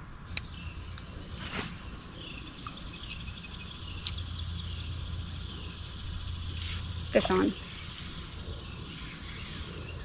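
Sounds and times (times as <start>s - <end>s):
insects chirring: 0.0s - 10.0s
brief swish: 1.4s - 2.0s.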